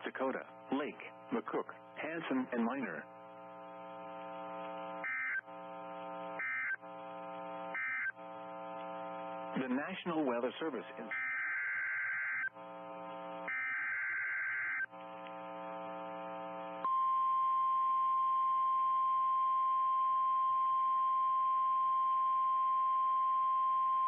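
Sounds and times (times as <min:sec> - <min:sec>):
buzzy hum: 0:00.4 - 0:24.0
steady warning alarm tone: 0:05.0 - 0:05.5, 0:06.2 - 0:06.9, 0:07.7 - 0:08.2, 0:11.0 - 0:12.6, 0:13.4 - 0:14.9.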